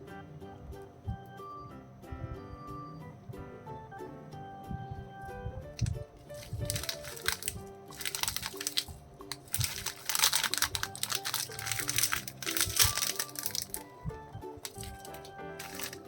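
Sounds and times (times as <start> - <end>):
background music: 0.0 - 16.0
plastic wrapper crinkling: 5.7 - 16.0.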